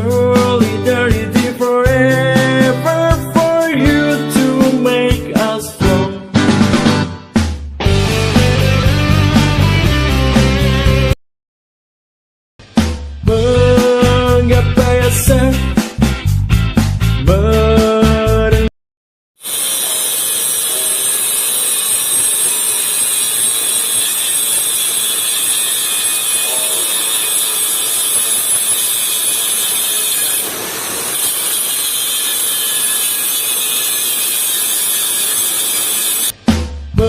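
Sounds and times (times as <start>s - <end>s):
music: 0.0s - 11.2s, 12.6s - 18.7s, 36.3s - 37.0s
high-pitched metalworking hiss: 19.4s - 36.3s.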